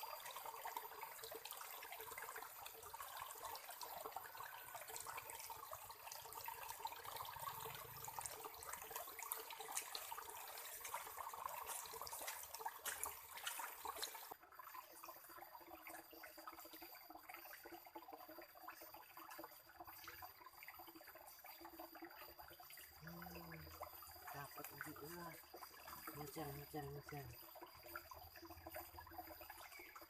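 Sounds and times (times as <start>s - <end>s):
water trickling and pattering: 0.0s - 30.0s.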